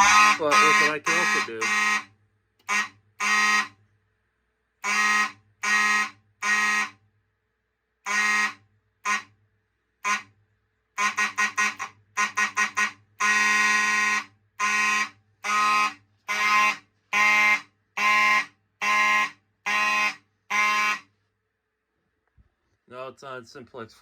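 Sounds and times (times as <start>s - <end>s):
fire alarm horn blasts: 0.0s - 3.8s, 4.8s - 7.0s, 8.0s - 9.3s, 10.0s - 10.3s, 11.0s - 21.1s.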